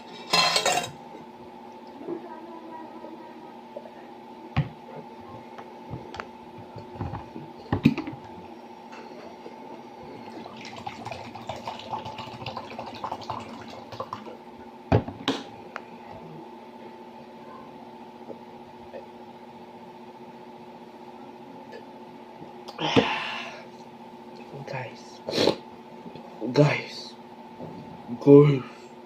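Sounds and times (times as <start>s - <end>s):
steady hum: 0.0s - 29.0s
cutlery clinking on a plate: 0.2s - 1.0s.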